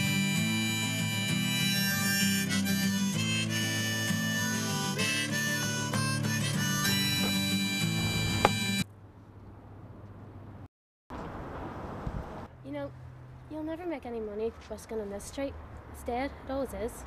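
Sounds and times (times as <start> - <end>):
acoustic guitar: 0.0 - 8.8
harmonica melody: 0.0 - 8.9.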